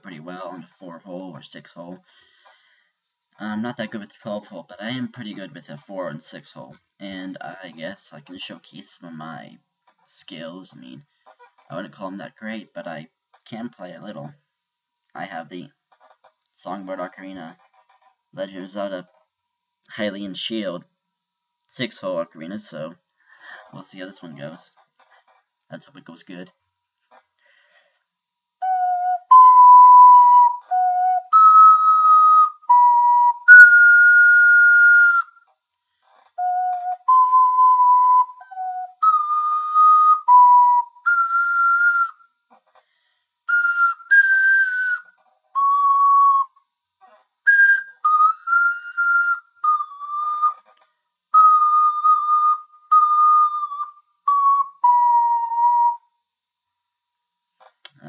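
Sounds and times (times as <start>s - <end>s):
ocarina melody: 28.6s - 35.4s, 36.4s - 42.3s, 43.5s - 46.6s, 47.4s - 56.1s.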